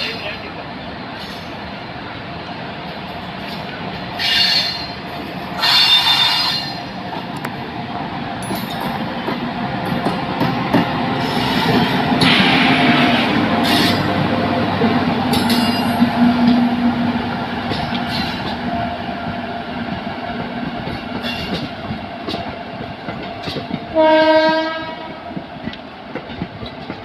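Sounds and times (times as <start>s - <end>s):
train rumbling past: 0.0s - 27.0s
train horn blast: 12.2s - 14.0s, 23.9s - 25.2s
wheels clicking over rail joints: 19.3s - 27.0s.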